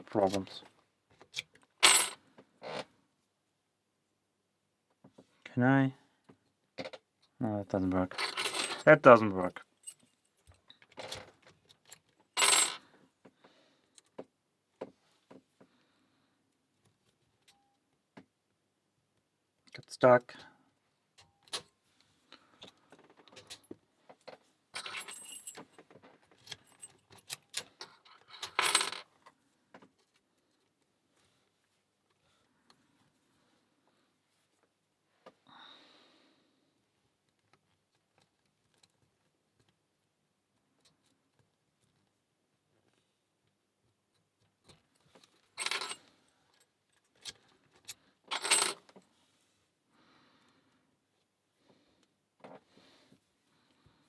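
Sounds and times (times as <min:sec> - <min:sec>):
lock picks clicking and scraping: 0:00.0 - 0:02.9, 0:09.7 - 0:12.8, 0:22.6 - 0:29.4, 0:43.9 - 0:49.0
clattering metal jangles: 0:01.8 - 0:02.2, 0:08.1 - 0:08.9, 0:12.4 - 0:12.8, 0:24.8 - 0:25.7, 0:45.5 - 0:46.0, 0:48.3 - 0:48.8
padlock and lock picks jingling: 0:24.8 - 0:29.0, 0:44.6 - 0:46.0.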